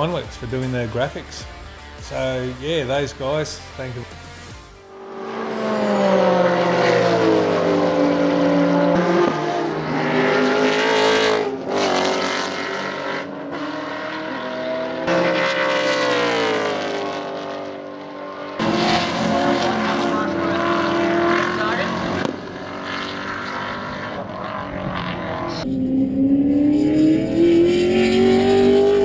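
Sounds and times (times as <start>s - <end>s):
background music: 0.0s - 4.9s
race car engine: 0.0s - 29.0s
gear changes: 18.5s - 29.0s.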